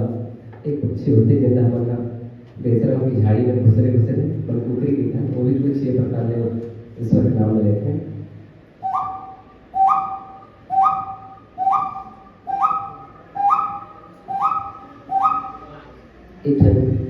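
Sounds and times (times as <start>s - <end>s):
man imitating bird call: 8.8s - 15.9s.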